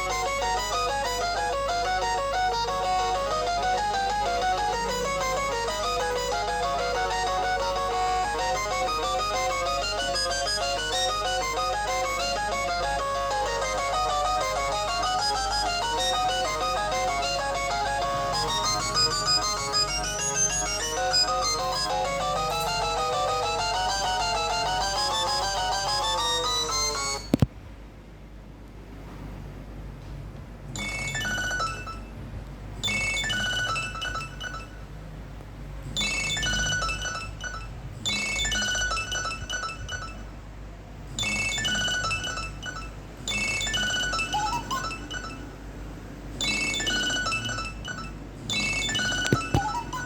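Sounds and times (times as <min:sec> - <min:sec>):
electronic ringtone melody: 0:00.0 - 0:27.4, 0:41.4 - 0:45.6, 0:46.4 - 0:50.0.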